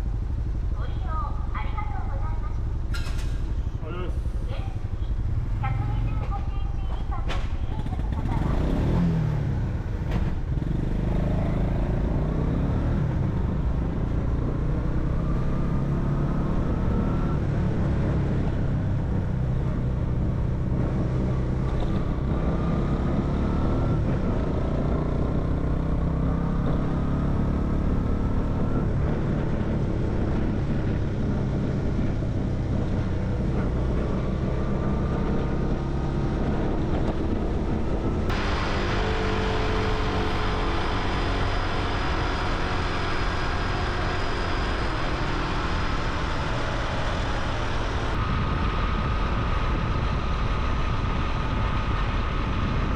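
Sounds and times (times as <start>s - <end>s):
motorcycle engine accelerating: 7.4s - 52.9s.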